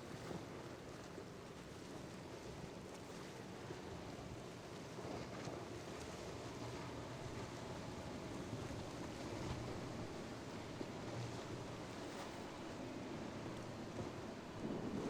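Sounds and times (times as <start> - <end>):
boat engines humming: 6.3 - 15.0
waves washing: 6.5 - 15.0.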